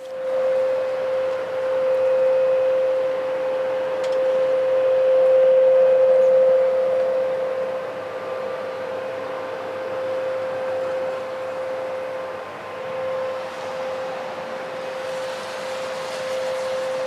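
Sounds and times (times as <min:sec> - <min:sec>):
single-pitched droning hum: 0:00.0 - 0:17.0
hiss: 0:13.2 - 0:17.0.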